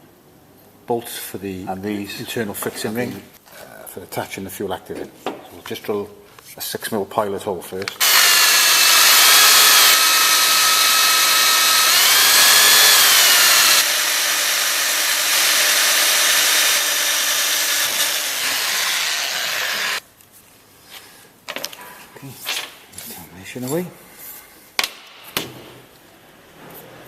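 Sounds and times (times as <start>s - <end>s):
drill motor whine: 8.0s - 20.0s.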